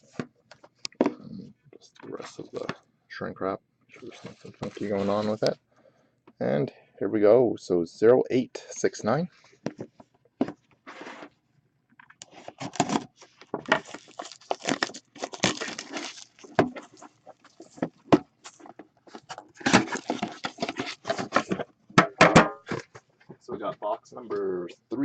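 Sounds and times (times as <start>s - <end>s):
plastic wrap crinkling and tearing: 4.2s - 5.5s, 12.2s - 21.6s
packaging clicks and rustles: 12.2s - 21.6s.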